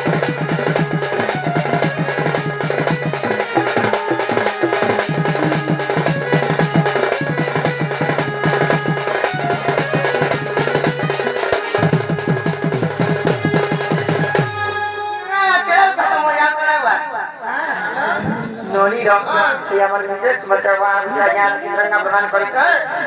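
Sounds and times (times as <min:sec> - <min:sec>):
fast folk drumming: 0:00.0 - 0:14.8.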